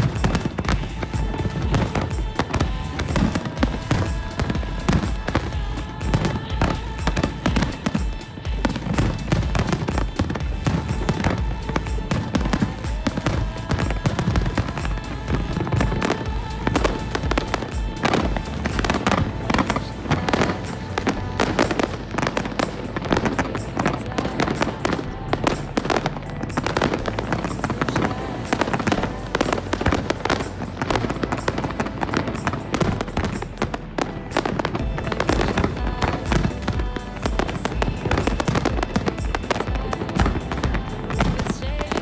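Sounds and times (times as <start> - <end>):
background music with steady tones: 0.0 - 42.0
rapid firework bangs: 0.0 - 42.0.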